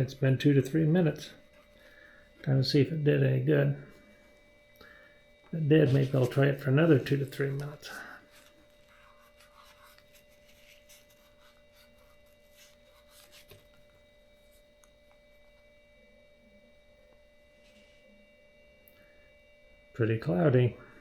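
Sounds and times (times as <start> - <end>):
faint electronic whine: 0.0 - 21.0
soft handling rustles: 5.3 - 15.7.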